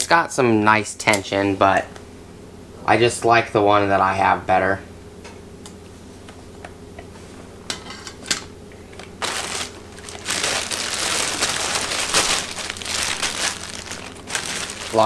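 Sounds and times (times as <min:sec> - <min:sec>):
plastic bags crinkling: 0:08.9 - 0:15.0.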